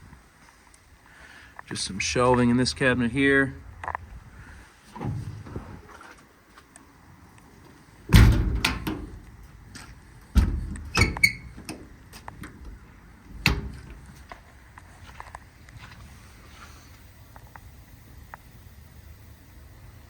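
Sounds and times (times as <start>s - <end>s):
heavy thud: 4.9s - 5.8s, 8.1s - 9.2s, 10.3s - 11.0s
metal door bang with rattle: 5.0s - 5.6s, 8.1s - 9.2s, 10.3s - 11.8s, 13.4s - 14.0s
latch clicks with metallic ring: 8.2s - 9.2s.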